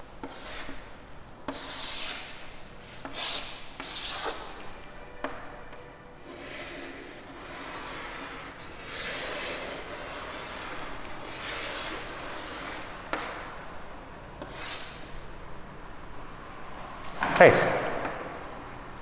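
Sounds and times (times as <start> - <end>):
chalk scraping on blackboard: 0.2 - 0.9, 1.5 - 4.6, 6.3 - 13.4, 14.4 - 16.7
chalk squeak: 0.2 - 0.9, 1.5 - 2.4, 3.0 - 4.6, 6.3 - 13.4, 14.4 - 16.6
chalk tap: 11.4 - 13.4.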